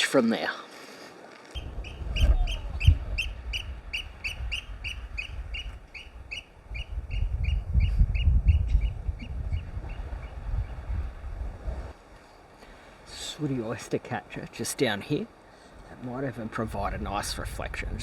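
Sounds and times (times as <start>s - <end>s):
wind rumble on microphone: 1.6s - 12.2s, 16.5s - 18.0s.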